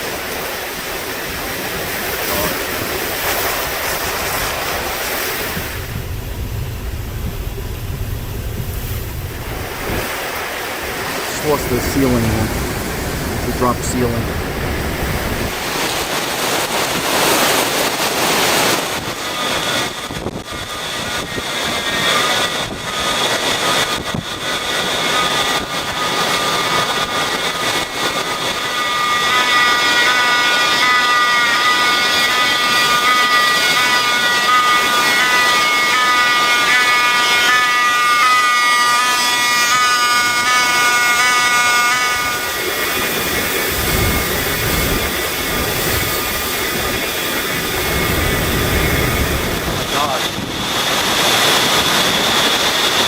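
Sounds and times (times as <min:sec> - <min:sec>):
hurricane-force wind rushing: 0:00.0 - 0:30.8, 0:41.4 - 0:53.0
high whistling wind howl: 0:00.0 - 0:53.0.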